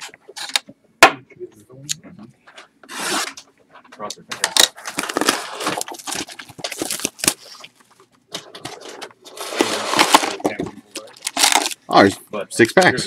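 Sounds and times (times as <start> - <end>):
cardboard box tearing and rustling: 4.6 - 7.4, 9.4 - 10.6, 11.2 - 11.8.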